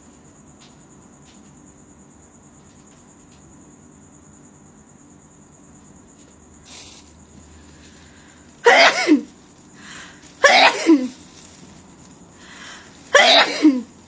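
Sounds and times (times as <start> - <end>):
breaths drawn in: 6.7 - 11.8, 12.4 - 13.9
person sneezing: 8.6 - 9.3, 9.9 - 11.2, 13.1 - 13.9.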